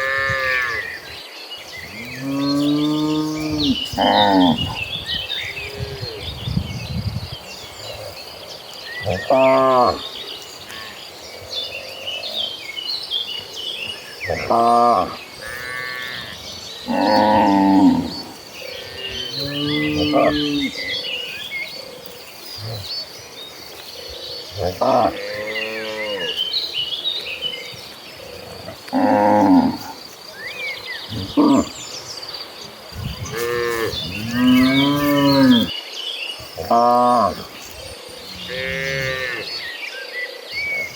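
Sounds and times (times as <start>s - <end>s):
cattle mooing: 19.0s - 21.0s, 33.2s - 35.7s.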